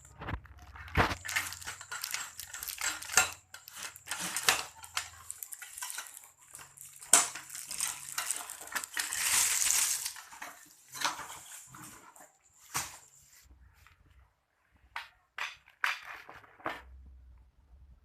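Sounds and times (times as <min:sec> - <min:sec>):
hard parts clacking and knocking: 0:00.0 - 0:12.2
packaging rustling: 0:00.0 - 0:13.3.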